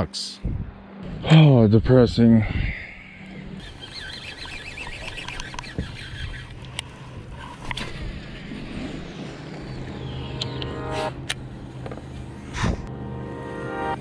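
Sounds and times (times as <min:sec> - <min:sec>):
low motor hum: 0:00.4 - 0:14.0
high chirps: 0:08.8 - 0:11.2.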